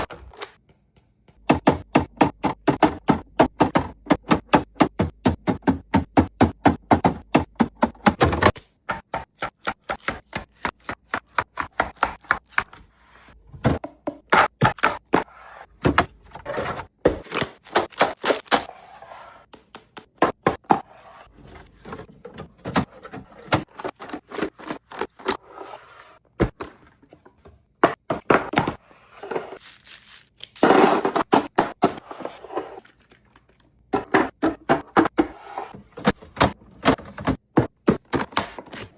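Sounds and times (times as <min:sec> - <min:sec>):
items thunking and scraping: 0:01.5 - 0:09.1, 0:11.9 - 0:29.6, 0:30.6 - 0:32.8, 0:33.9 - 0:38.9
items tapping and knocking: 0:33.9 - 0:38.9.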